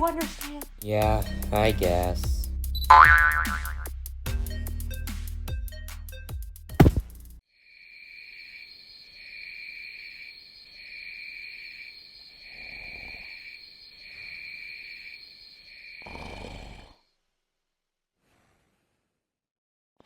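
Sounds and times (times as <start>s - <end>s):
crickets chirping: 7.5s - 16.9s.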